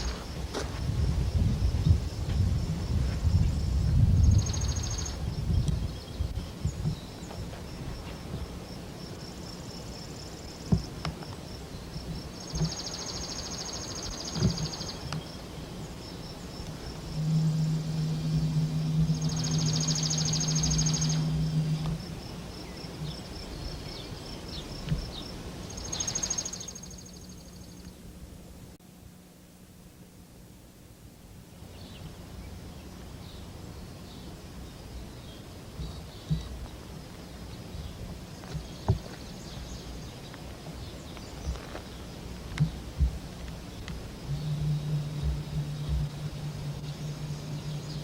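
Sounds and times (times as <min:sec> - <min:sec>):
insects trilling: 0:00.0 - 0:28.2, 0:31.5 - 0:48.0
low steady hum: 0:00.0 - 0:48.0
loud insect buzzing bursts: 0:07.8 - 0:23.8, 0:42.0 - 0:48.0.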